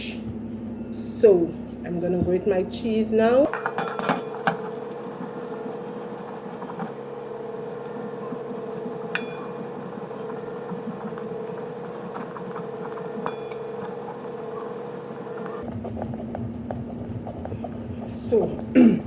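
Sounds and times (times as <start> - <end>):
steady hum: 0.0 - 19.0
cheese scraping on metal grater: 4.2 - 18.6.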